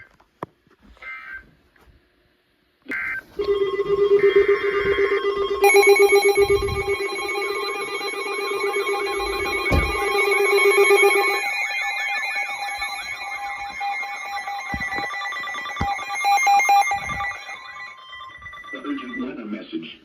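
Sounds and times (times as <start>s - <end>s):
alert data tone chirps: 3.4s - 19.4s
pulsing alarm tone: 3.4s - 19.4s
beeping and warbling alarm tones: 3.4s - 19.9s.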